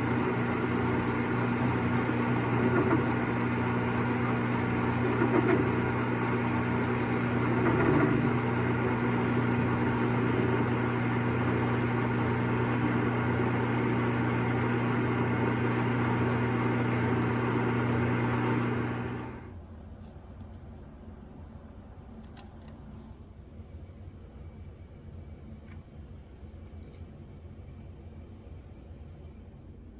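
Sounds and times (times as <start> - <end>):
small lathe humming: 0.0 - 19.5.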